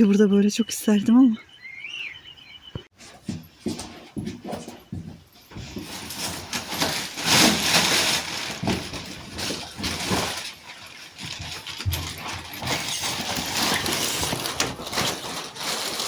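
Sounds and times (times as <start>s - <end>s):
footsteps walking: 2.8s - 6.5s
rustling scraping noise: 2.9s - 16.0s.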